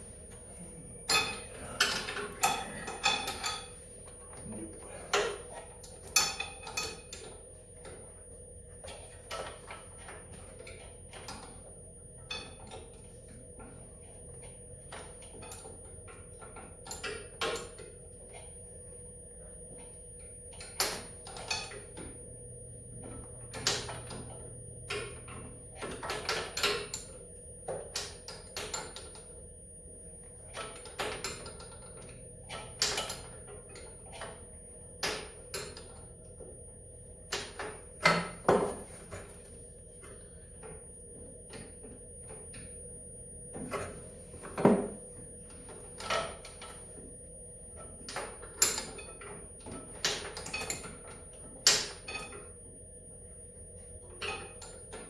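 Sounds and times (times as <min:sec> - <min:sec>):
hand tools clanking on metal: 0:01.1 - 0:03.7.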